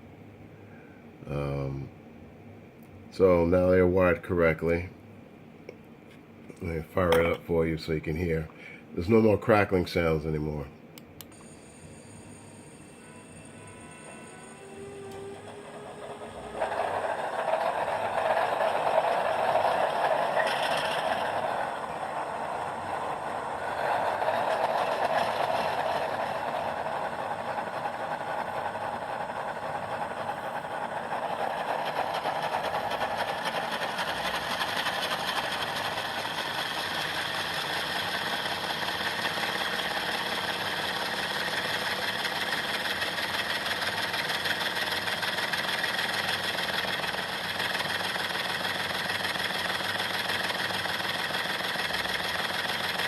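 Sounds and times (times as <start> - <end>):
diesel locomotive idling from speakers: 12.4 - 53.0.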